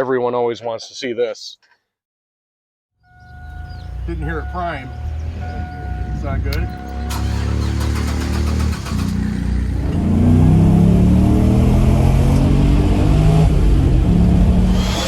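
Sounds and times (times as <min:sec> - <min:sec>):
engine revving: 0:03.9 - 0:15.0
loud exhaust: 0:07.0 - 0:15.0.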